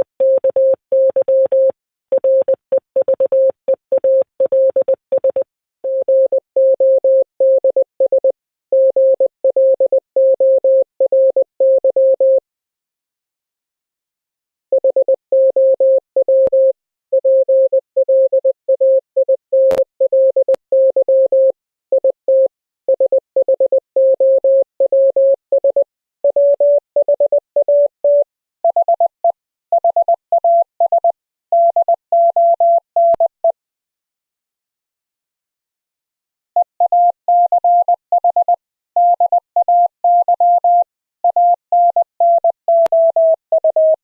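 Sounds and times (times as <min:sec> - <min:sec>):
morse code tone: 0:00.0 - 0:12.4, 0:29.8 - 0:33.6, 0:36.6 - 0:44.0.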